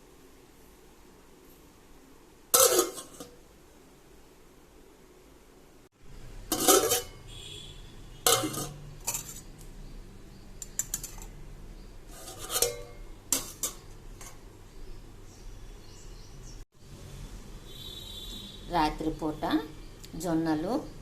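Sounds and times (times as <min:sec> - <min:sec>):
dishes and utensils clattering: 0:02.6 - 0:03.3, 0:06.5 - 0:07.3, 0:08.3 - 0:09.6, 0:10.6 - 0:11.4, 0:12.1 - 0:14.4.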